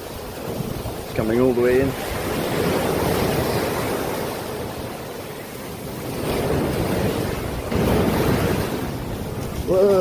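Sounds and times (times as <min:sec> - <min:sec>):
sea waves washing on shore: 0:00.0 - 0:10.0.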